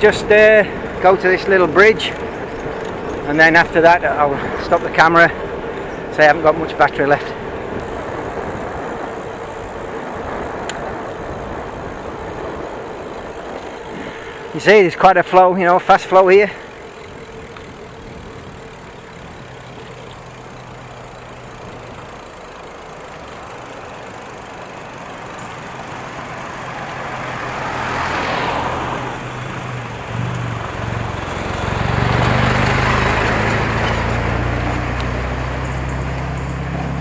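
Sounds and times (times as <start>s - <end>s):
vehicle engines passing: 0.0s - 37.0s.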